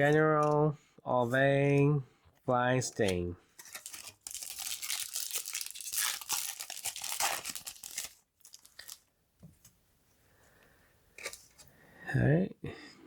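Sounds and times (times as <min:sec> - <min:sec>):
foil wrapper tearing and crinkling: 0:03.6 - 0:09.1.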